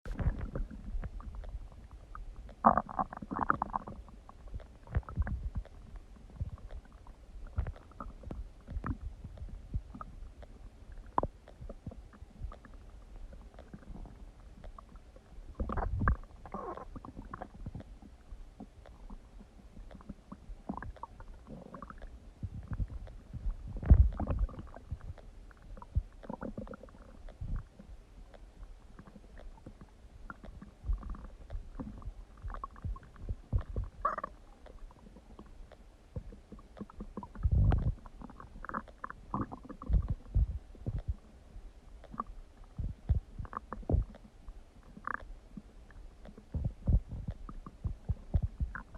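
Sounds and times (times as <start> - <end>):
stomach growling and gurgling: 0.1 - 48.9.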